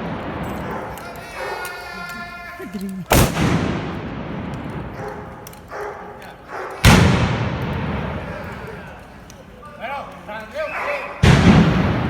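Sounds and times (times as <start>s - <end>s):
echoing gunshots: 0.0s - 1.6s, 3.0s - 6.0s, 6.8s - 8.8s, 11.2s - 12.0s.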